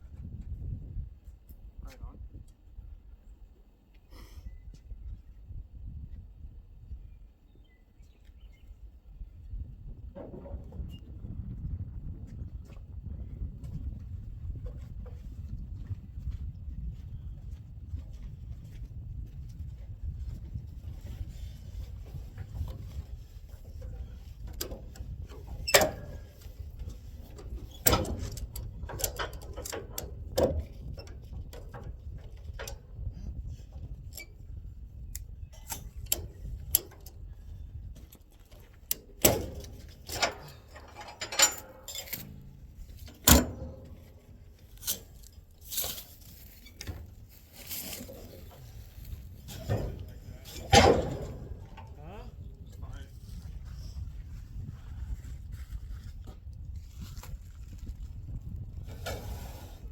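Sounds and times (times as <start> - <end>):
sharp knocks and clanks: 47.9 - 52.0.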